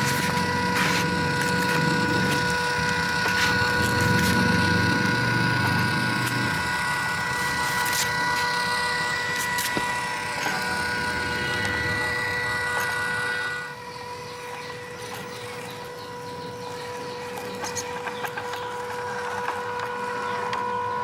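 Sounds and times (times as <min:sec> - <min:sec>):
rough noisy rumble: 0:00.0 - 0:13.6
small electric motors whining: 0:00.0 - 0:21.0.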